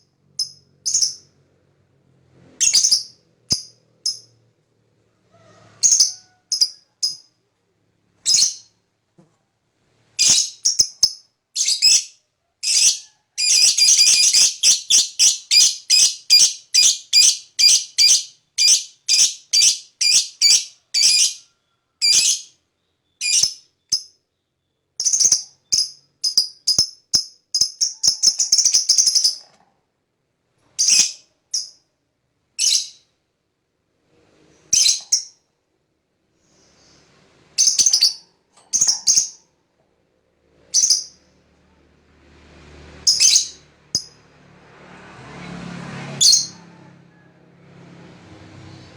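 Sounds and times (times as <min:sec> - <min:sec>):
lovebird shrill chirping: 0:00.4 - 0:01.3, 0:02.6 - 0:04.3, 0:08.2 - 0:08.7, 0:10.2 - 0:21.4, 0:22.0 - 0:22.5, 0:32.6 - 0:33.0, 0:37.6 - 0:39.4, 0:40.7 - 0:41.2, 0:43.1 - 0:44.2.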